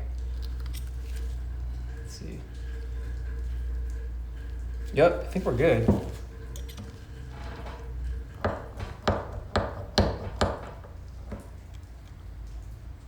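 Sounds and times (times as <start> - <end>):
low steady hum: 0.0 - 13.0
metal tools clicking and knocking: 5.8 - 11.8.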